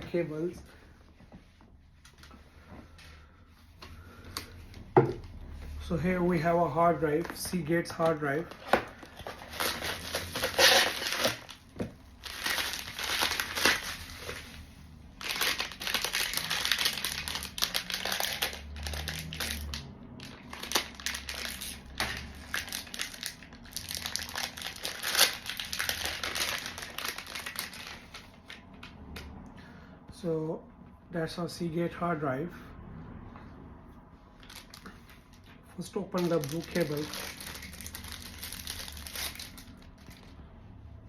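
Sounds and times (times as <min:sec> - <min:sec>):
plastic packaging crinkling: 0:06.2 - 0:28.8, 0:34.4 - 0:40.4.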